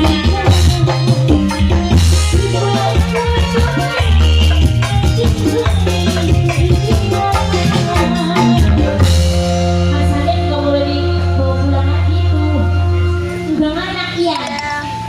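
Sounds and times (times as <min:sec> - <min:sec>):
person singing: 0:00.0 - 0:09.3
drums and percussion: 0:00.0 - 0:11.2, 0:12.9 - 0:15.0
held bass and melody: 0:00.0 - 0:15.0.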